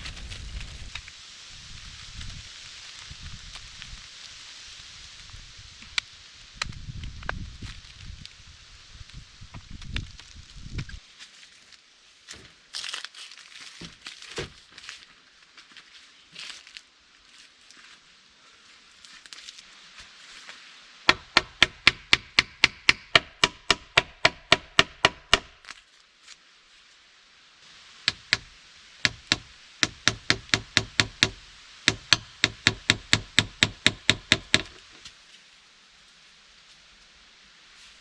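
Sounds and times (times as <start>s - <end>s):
hammer tapping nails into wood: 21.1s - 25.6s, 28.1s - 28.5s, 29.1s - 34.8s.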